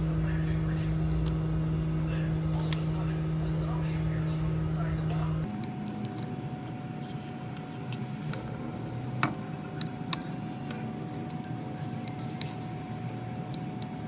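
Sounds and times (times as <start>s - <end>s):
faint steady hum: 5.2s - 14.0s.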